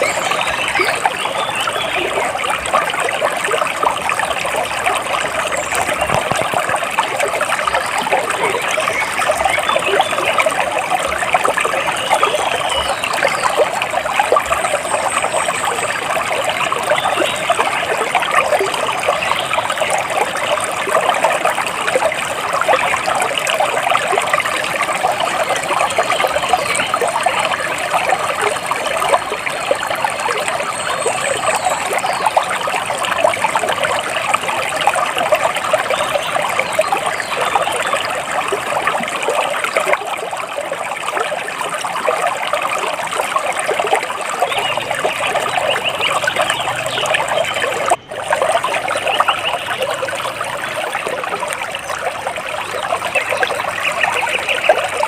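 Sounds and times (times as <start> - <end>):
water trickling and splashing: 0.0 - 55.0.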